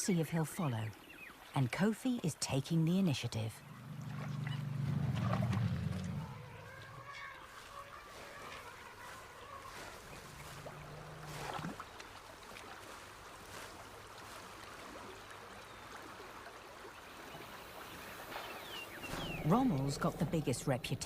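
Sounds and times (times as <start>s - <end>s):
low hum with rising sweep: 3.6s - 7.0s.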